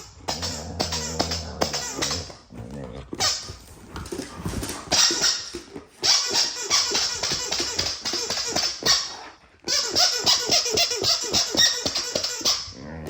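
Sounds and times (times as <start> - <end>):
dog honking: 5.0 - 12.8.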